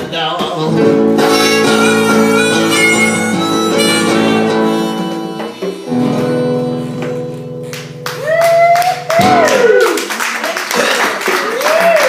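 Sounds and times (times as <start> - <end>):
acoustic guitar: 0.0 - 9.6
reedy lead tone: 0.7 - 7.4.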